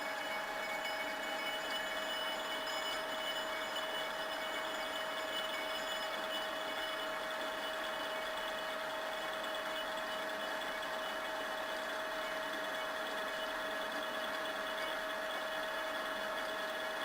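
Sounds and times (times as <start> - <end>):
lathe running with hum: 0.0 - 17.0.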